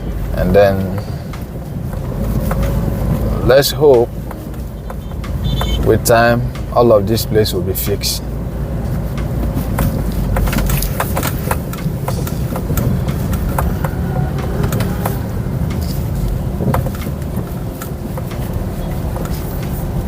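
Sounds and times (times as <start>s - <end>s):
sharp clicks and knocks: 0.0s - 7.1s, 8.9s - 20.0s
car rumbling over rough road: 0.0s - 20.0s.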